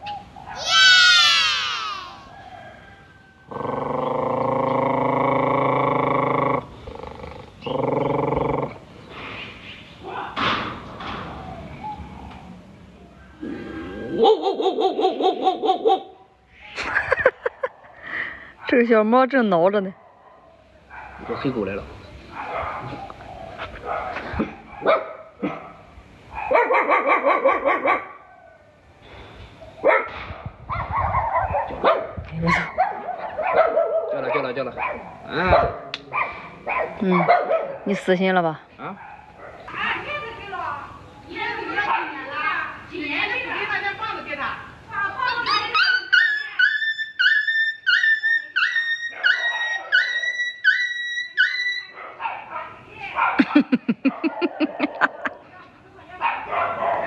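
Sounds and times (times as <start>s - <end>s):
dog barking: 19.9s - 21.6s, 22.3s - 28.2s, 29.8s - 37.9s, 38.9s - 39.7s, 41.8s - 42.3s, 45.4s - 55.4s, 56.2s - 57.0s.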